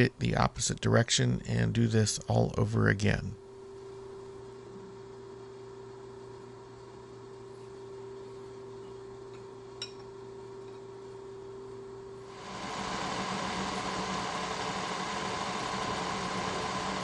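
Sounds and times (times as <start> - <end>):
machine hum: 1.4 - 17.0
milling machine running: 12.3 - 17.0.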